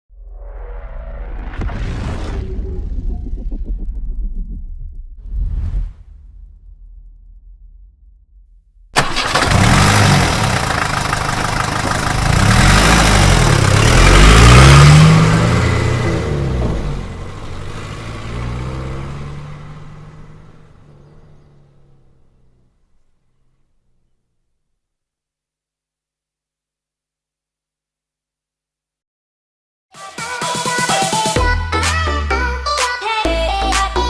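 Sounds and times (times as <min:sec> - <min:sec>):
bus engine starting and revving: 0:09.0 - 0:23.6.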